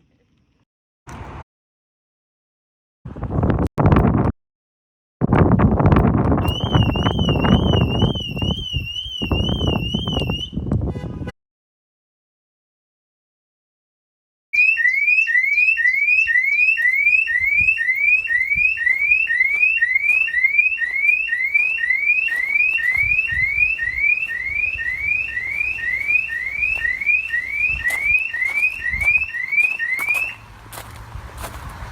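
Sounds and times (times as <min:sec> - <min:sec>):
car alarm siren whooping: 0:06.4 - 0:10.6, 0:14.6 - 0:30.5.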